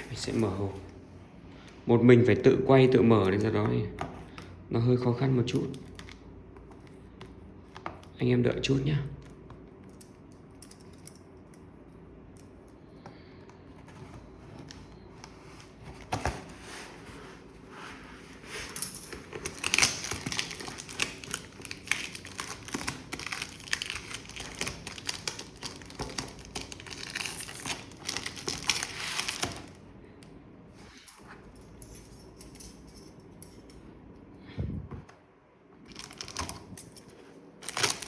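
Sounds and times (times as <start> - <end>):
packaging crinkling and tearing: 5.6 - 7.8, 19.1 - 29.8, 35.9 - 36.8, 37.6 - 38.0.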